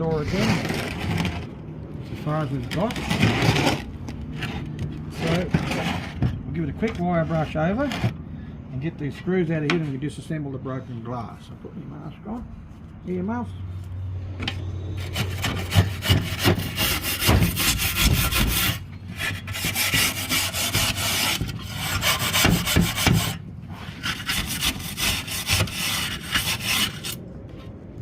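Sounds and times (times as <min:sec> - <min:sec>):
wire brush scraping metal door: 0:00.0 - 0:01.5, 0:02.2 - 0:06.3, 0:15.0 - 0:27.2.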